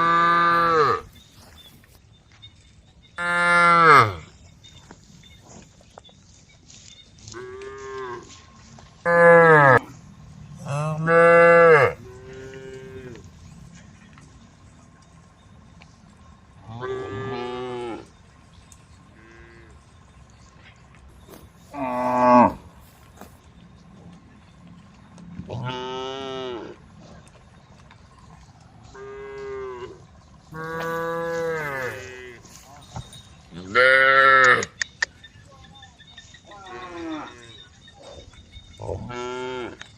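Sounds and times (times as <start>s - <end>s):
cows mooing: 0.0s - 1.2s, 3.2s - 4.3s, 9.0s - 13.5s, 16.6s - 18.2s, 19.2s - 19.8s, 21.7s - 23.0s, 25.4s - 26.9s, 28.8s - 34.8s, 36.5s - 37.6s, 38.7s - 39.9s.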